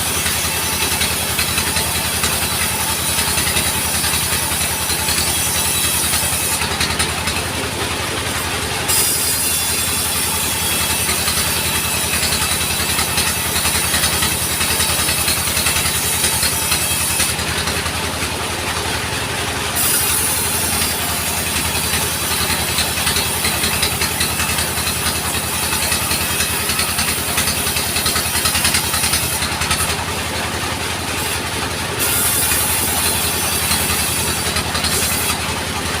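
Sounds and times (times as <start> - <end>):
sawmill engine running: 0.0 - 36.0.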